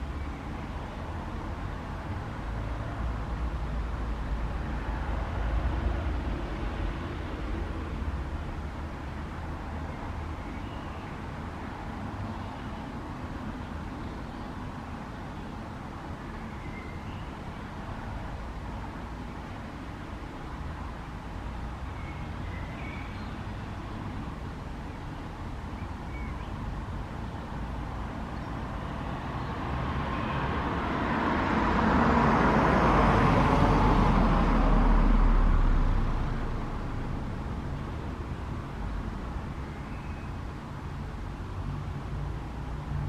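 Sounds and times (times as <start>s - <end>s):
vehicle driving past: 29.2s - 37.3s.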